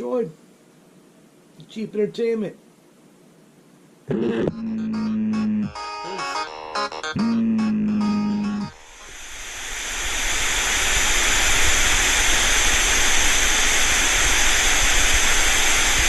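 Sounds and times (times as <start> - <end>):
held synth note: 4.5 - 6.4, 7.1 - 9.0
steady rushing hiss: 8.1 - 16.0.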